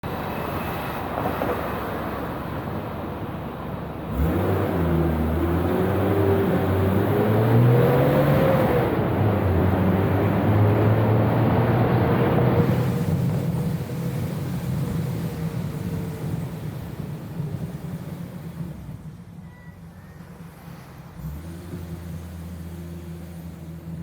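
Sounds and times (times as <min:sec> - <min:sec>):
car engine pulling away: 0:04.0 - 0:19.2, 0:19.8 - 0:24.0.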